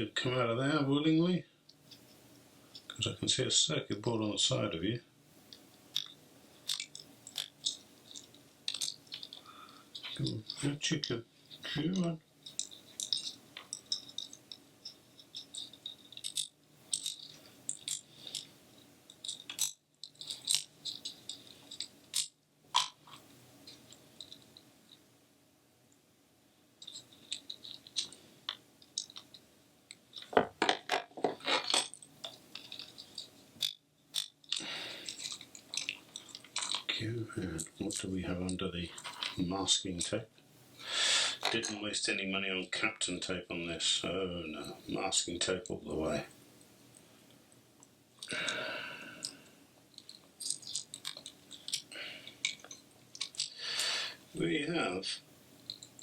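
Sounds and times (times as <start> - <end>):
plastic parts clicking and rattling: 5.5 - 25.0, 26.8 - 39.4, 49.2 - 53.6, 55.6 - 56.0
plastic parts scraping: 5.9 - 14.5, 15.2 - 18.5, 19.1 - 24.5, 26.8 - 29.4, 30.1 - 39.4, 49.9 - 53.6.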